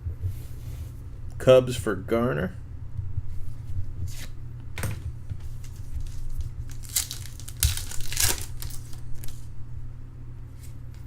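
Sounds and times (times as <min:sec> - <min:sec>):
foil wrapper tearing and crinkling: 0:05.6 - 0:09.5.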